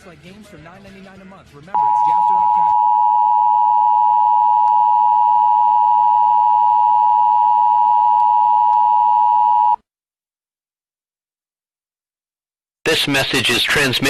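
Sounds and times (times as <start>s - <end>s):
two-tone alert signal: 1.8s - 9.8s.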